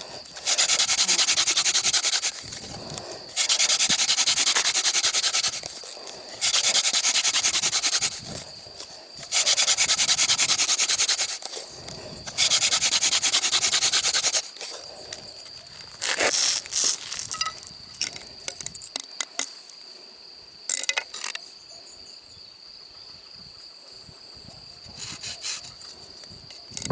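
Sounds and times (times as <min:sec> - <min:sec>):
wooden hand drill rubbing: 0:00.0 - 0:14.8, 0:24.8 - 0:26.9
high insect trill: 0:00.0 - 0:26.9.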